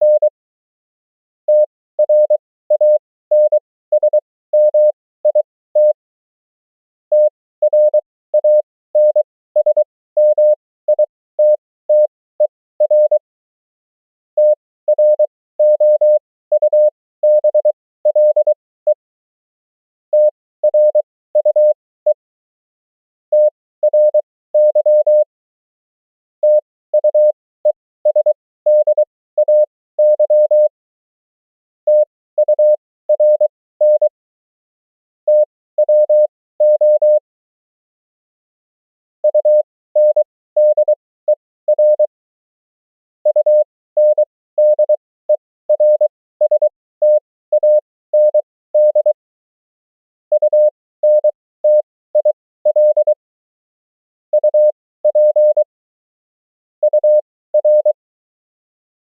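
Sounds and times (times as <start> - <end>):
morse code tone: 35.3 - 37.2, 39.2 - 42.1, 43.3 - 49.2, 50.3 - 53.2, 54.4 - 55.7, 56.8 - 58.0.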